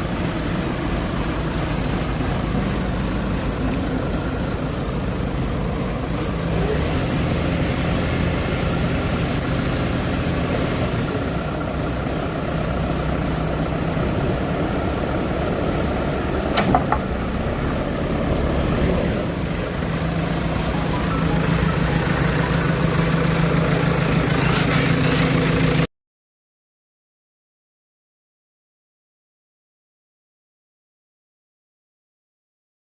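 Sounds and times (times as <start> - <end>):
diesel engine running: 0.0 - 25.9
sharp knocks: 16.5 - 17.0.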